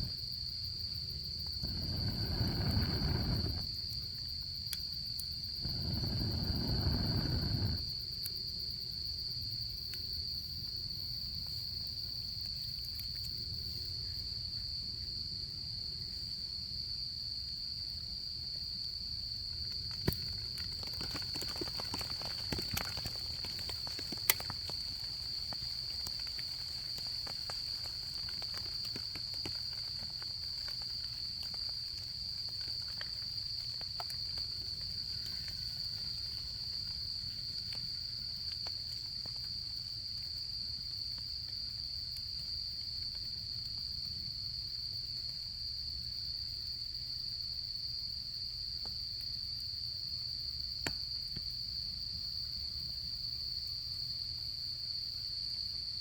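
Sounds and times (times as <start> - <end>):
crickets trilling: 0.0 - 56.0
campfire crackling: 1.1 - 8.3, 18.5 - 44.3
campfire pop: 1.4 - 8.4, 19.4 - 44.2, 50.8 - 51.5.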